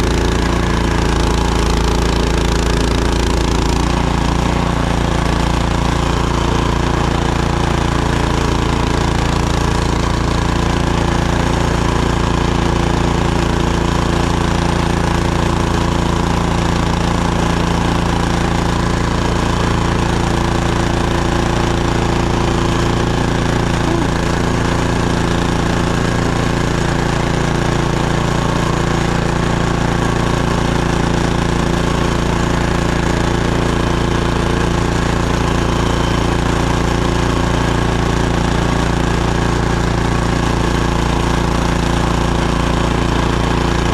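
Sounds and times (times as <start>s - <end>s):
snowblower engine running: 0.0s - 43.9s.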